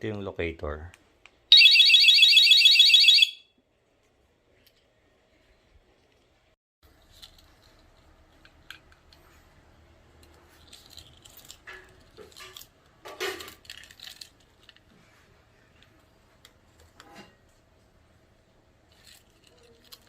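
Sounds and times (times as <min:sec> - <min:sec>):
small parts rattling: 0:10.2 - 0:15.0, 0:18.8 - 0:20.0.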